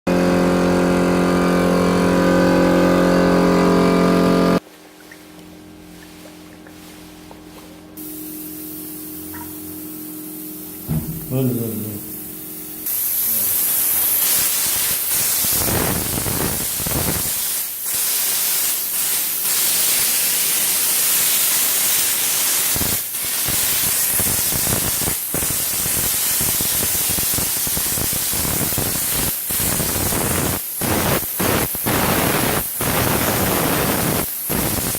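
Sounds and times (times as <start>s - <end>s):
loud static hiss: 7.9s - 34.9s.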